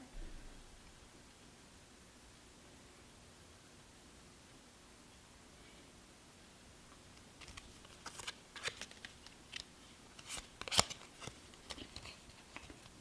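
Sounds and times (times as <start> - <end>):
cards rustling and clicking: 7.4 - 13.0.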